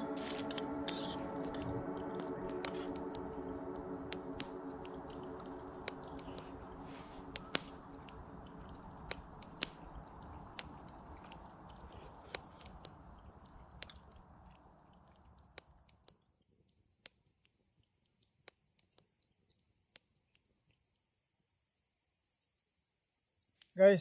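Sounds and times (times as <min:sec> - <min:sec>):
music tone: 0:00.0 - 0:12.4
faint low rumble: 0:00.0 - 0:16.4
sharp clicks and crackles: 0:00.1 - 0:22.7.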